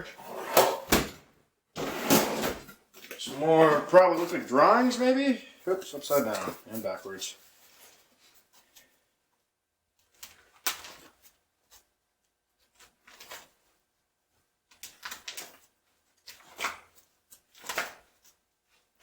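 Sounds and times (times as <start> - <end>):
paper rustling: 5.7 - 8.9.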